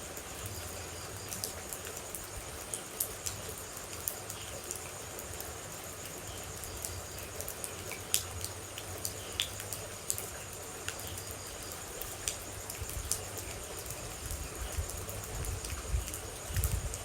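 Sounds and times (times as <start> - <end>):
water droplets dripping: 2.7 - 11.3.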